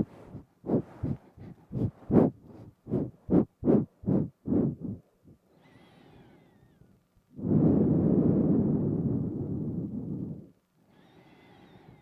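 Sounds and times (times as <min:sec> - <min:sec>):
nose breath on microphone: 0:00.0 - 0:05.3, 0:07.4 - 0:12.0.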